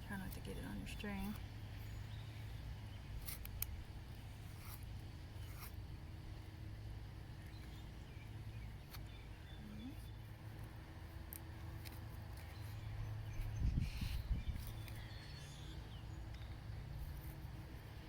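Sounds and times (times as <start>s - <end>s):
low steady rumble: 0.0s - 18.0s
faint bird chirps: 7.4s - 10.3s, 12.4s - 16.6s.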